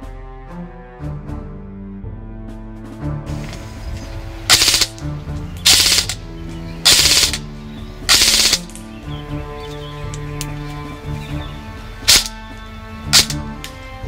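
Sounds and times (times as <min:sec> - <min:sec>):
background music: 0:00.0 - 0:14.0
airsoft rifle full-auto bursts: 0:04.5 - 0:05.0, 0:05.6 - 0:06.2, 0:06.8 - 0:07.4, 0:08.1 - 0:08.8, 0:12.1 - 0:12.3, 0:13.1 - 0:13.4.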